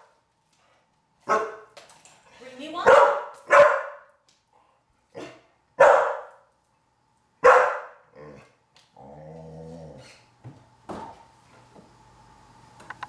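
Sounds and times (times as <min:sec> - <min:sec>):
dog barking: 0:01.2 - 0:01.7, 0:02.8 - 0:04.2, 0:05.2 - 0:06.4, 0:07.4 - 0:08.1.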